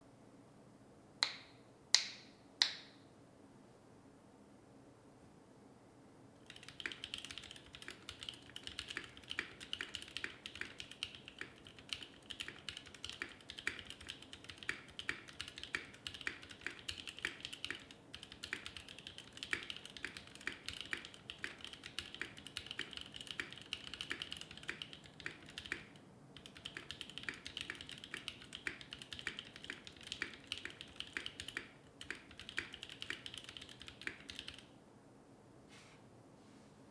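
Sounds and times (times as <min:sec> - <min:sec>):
fast mechanical keyboard typing: 0:06.4 - 0:34.7.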